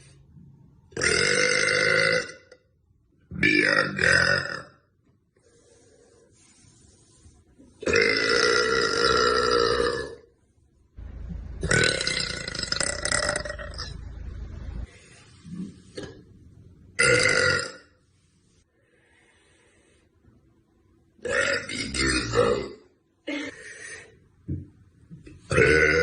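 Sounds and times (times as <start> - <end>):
woman belching: 7.9 - 10.2, 11.6 - 13.9, 17.0 - 17.8, 21.2 - 22.8, 25.5 - 26.0
low hum: 10.7 - 17.0.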